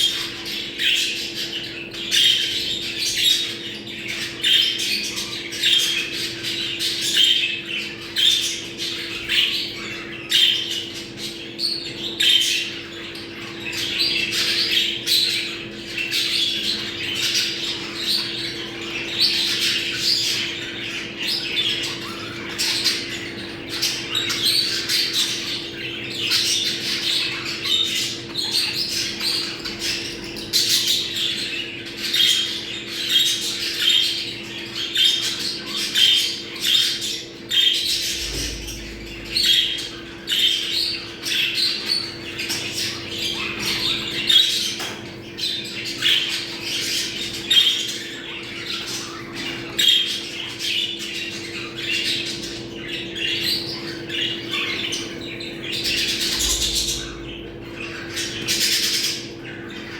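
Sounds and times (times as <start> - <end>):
budgerigars chattering: 0.0 - 59.9
steady low hum: 37.1 - 44.3, 54.6 - 59.9.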